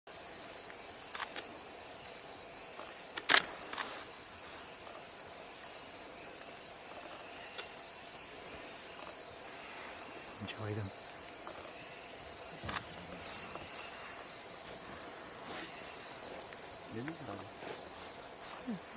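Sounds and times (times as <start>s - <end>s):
insects chirring: 0.1s - 18.9s
sharp clicks: 3.1s - 3.9s.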